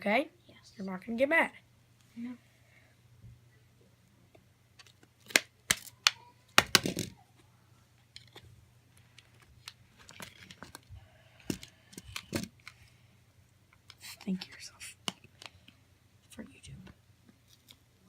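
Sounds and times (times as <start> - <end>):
plastic parts clicking apart: 4.8 - 7.2, 9.2 - 12.8
faint scraping and crinkling: 6.9 - 13.1, 16.5 - 17.8.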